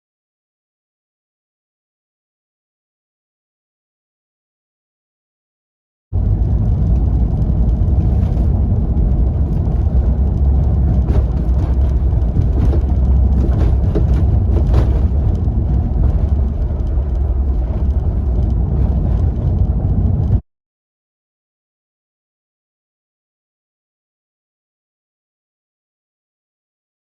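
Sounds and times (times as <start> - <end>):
car cabin road rumble: 6.2 - 20.4
sliding door rattle and creak: 8.0 - 19.9.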